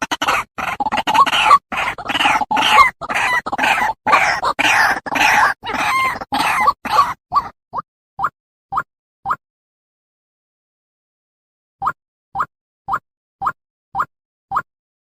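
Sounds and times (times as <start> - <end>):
bird harsh croaking calls: 0.0 - 7.5.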